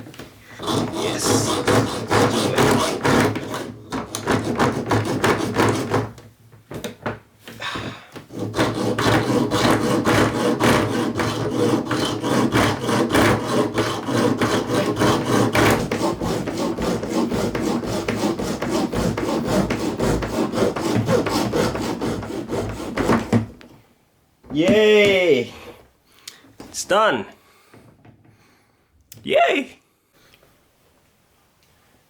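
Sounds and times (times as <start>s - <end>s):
hand saw cutting metal shaft: 0.6s - 6.1s, 8.3s - 23.4s.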